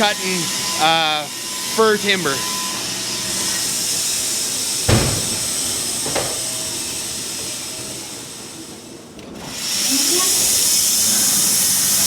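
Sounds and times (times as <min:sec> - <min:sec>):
sawmill machinery hissing: 0:00.0 - 0:12.0
heavy thump: 0:04.8 - 0:06.7.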